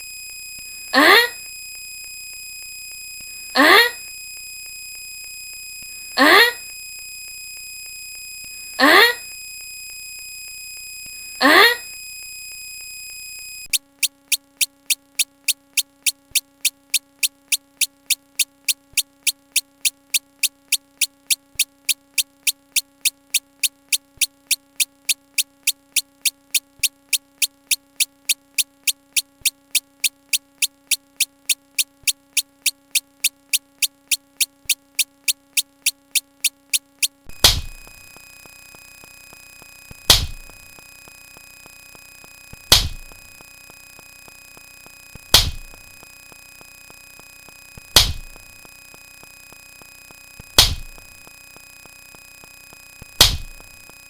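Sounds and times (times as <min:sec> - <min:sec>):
low electronic hum: 0:00.0 - 0:54.0
rapid even ticking: 0:13.7 - 0:38.1
faint low thud: 0:37.4 - 0:37.8, 0:40.1 - 0:40.5, 0:42.7 - 0:43.1, 0:45.3 - 0:45.7, 0:48.0 - 0:48.4, 0:50.6 - 0:51.0, 0:53.2 - 0:53.6.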